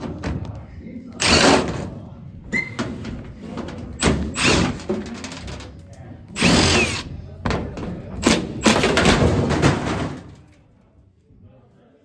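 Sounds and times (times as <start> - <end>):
knocks and clatter: 2.8 - 5.8, 6.4 - 10.5.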